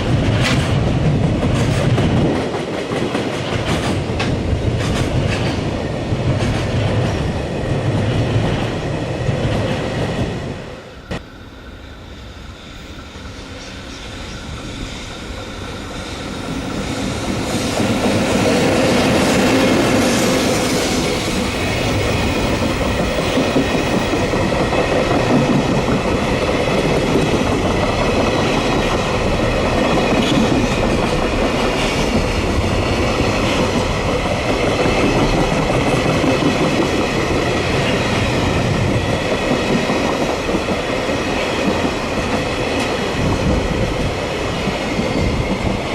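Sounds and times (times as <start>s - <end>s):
freight train running past: 0.0s - 45.9s.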